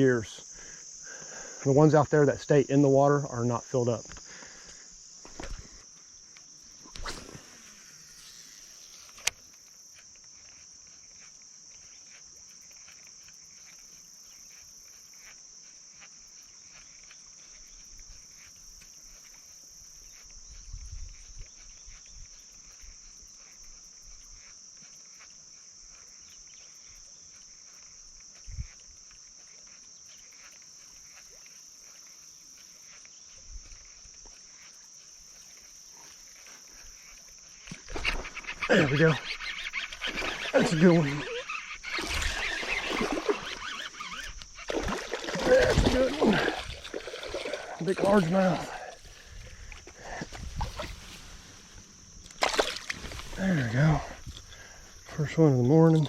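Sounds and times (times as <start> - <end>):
high-pitched insect chorus: 0.0 - 56.0
faint ticks: 4.0 - 42.0, 43.4 - 44.7.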